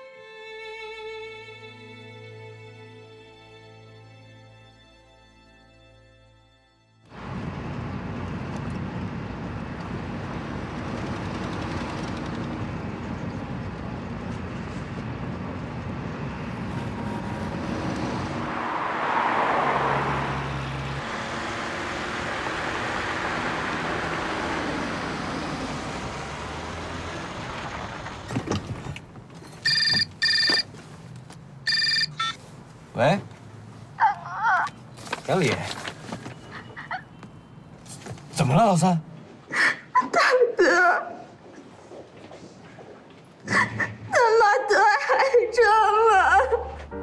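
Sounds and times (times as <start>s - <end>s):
road traffic rumble: 7.1s - 39.5s
vehicle passing: 7.2s - 28.6s
telephone ringing: 29.5s - 30.8s, 31.7s - 32.4s.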